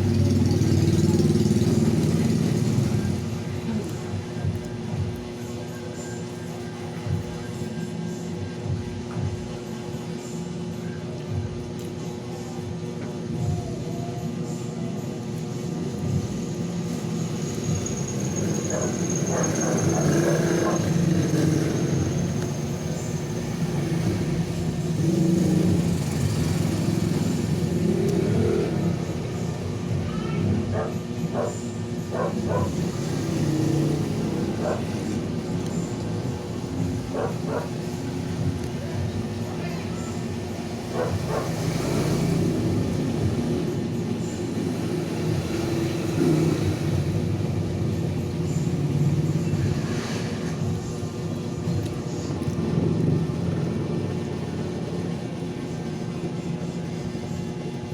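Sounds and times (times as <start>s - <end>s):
vehicle engine running: 0.0s - 10.1s, 11.2s - 57.9s.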